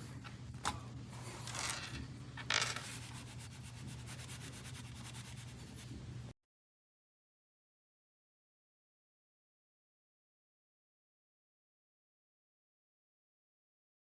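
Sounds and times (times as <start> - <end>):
steady low hum: 0.0 - 6.3
brushing scrapes: 2.5 - 6.0.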